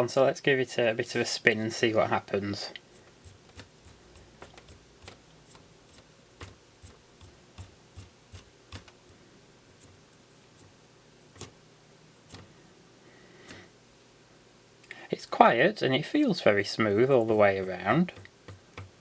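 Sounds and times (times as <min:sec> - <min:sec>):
faint low whir: 0:01.2 - 0:15.0.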